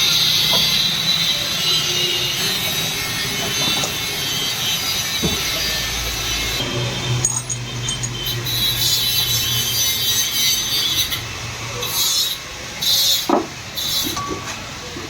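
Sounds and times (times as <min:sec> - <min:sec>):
cutting tool scraping metal: 0:07.2 - 0:14.4.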